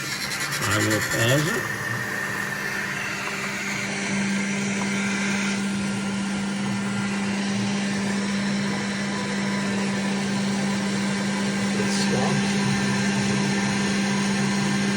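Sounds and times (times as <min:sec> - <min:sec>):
electric fan humming and whirring: 0:00.0 - 0:14.9.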